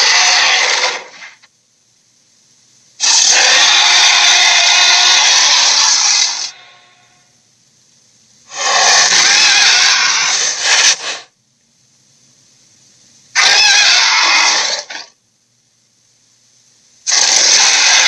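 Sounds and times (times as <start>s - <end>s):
dinosaur roar: 0.0s - 1.2s, 3.0s - 7.0s, 8.5s - 11.0s, 13.4s - 15.1s, 17.1s - 18.0s.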